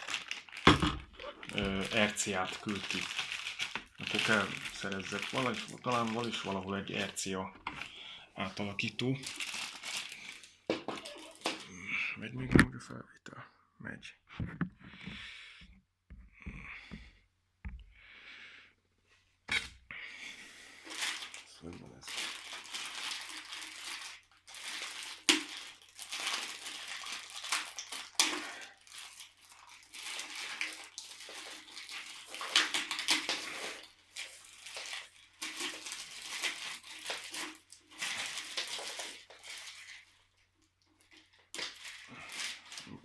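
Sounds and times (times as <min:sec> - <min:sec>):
packaging rustling: 0:00.0 - 0:11.8, 0:20.8 - 0:40.4, 0:41.0 - 0:43.0.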